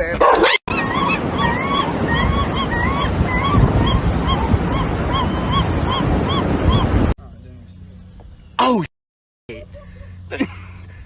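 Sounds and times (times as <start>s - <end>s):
animal high-pitched calls: 0.4s - 6.9s.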